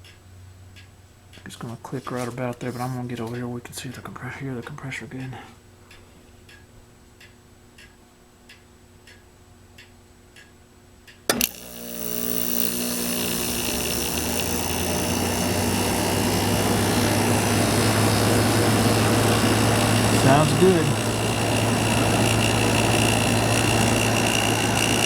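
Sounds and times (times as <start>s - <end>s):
faint even ticking: 9.8s - 25.0s
air conditioner humming: 13.6s - 25.0s.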